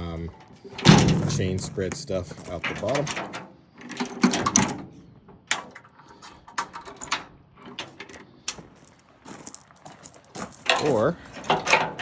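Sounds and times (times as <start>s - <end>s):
metal chain latch clanking: 0.8s - 4.9s, 5.5s - 8.6s, 10.6s - 12.0s
person speaking: 1.1s - 3.1s.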